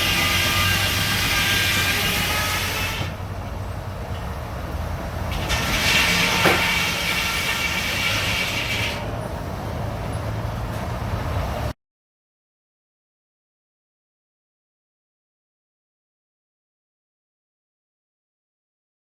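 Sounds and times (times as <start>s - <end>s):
saw cutting through log: 0.0s - 3.3s, 5.2s - 9.2s
sawmill drive humming: 0.0s - 11.7s.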